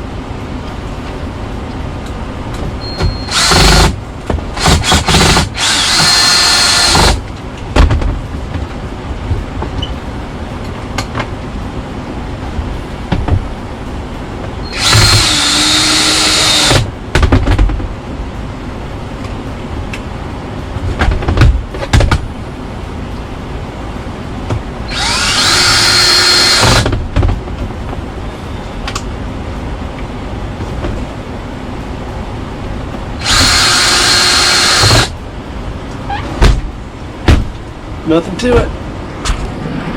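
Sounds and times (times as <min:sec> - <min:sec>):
power drill whining: 0:03.2 - 0:04.0, 0:04.6 - 0:07.2, 0:14.7 - 0:16.8, 0:24.9 - 0:26.8, 0:33.2 - 0:35.1.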